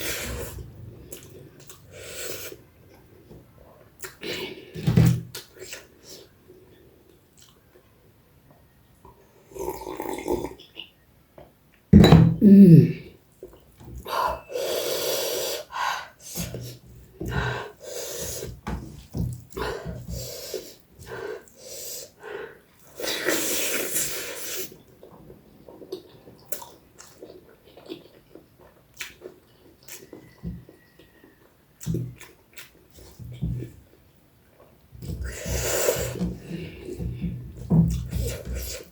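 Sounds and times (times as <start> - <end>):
noodle slurping: 22.9 - 24.8
wet chewing smacks: 24.8 - 33.8.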